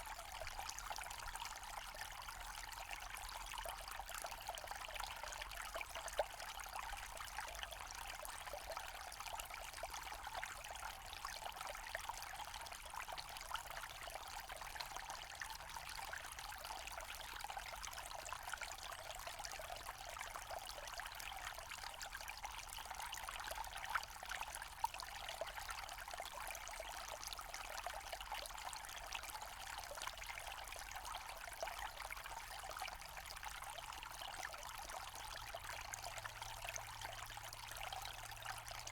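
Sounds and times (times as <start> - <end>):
stream trickling over stones: 0.0 - 38.9.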